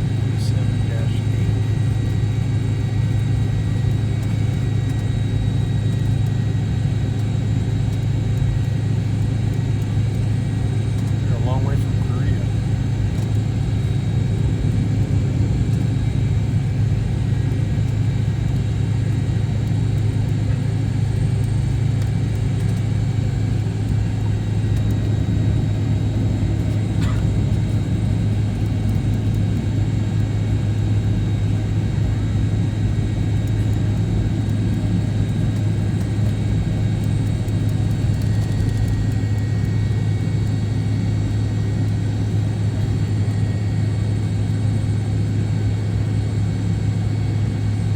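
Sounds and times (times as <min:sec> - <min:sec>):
jet engines droning: 0:00.0 - 0:47.9.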